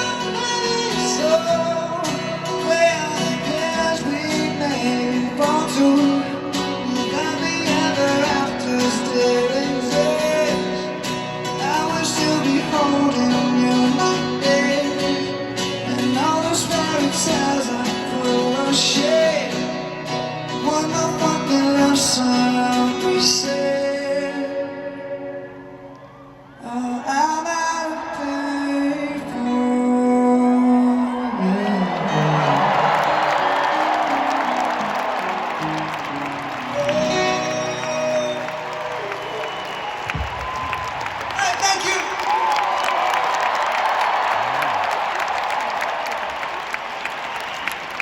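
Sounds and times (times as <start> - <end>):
live band playing pop song: 0.0 - 25.2, 28.9 - 40.6
person singing: 0.0 - 25.8, 26.6 - 33.2, 36.6 - 39.2
acoustic guitar strumming: 0.0 - 25.9, 31.7 - 39.9.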